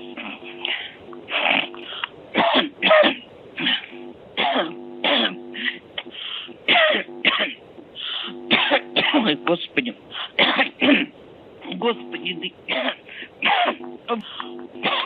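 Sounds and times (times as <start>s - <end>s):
person coughing over telephone: 2.4s - 5.8s, 6.6s - 7.6s, 8.3s - 9.4s, 10.4s - 11.1s, 12.7s - 15.0s.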